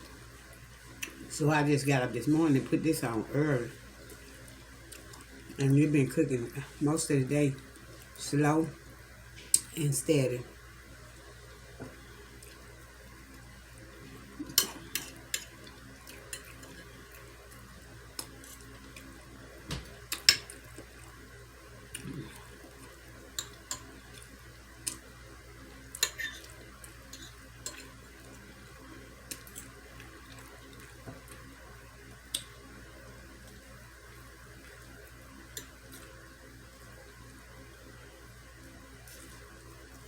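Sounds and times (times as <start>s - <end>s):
chewing and eating sounds: 0.0s - 1.3s, 3.7s - 5.7s, 7.6s - 8.2s, 12.3s - 25.1s, 25.7s - 32.7s, 39.0s - 40.0s
steady low hum: 0.0s - 40.0s.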